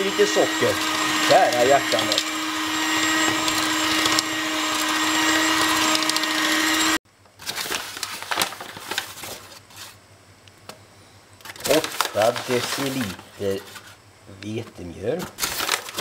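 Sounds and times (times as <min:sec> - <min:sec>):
electric hand mixer running: 0:00.0 - 0:07.0.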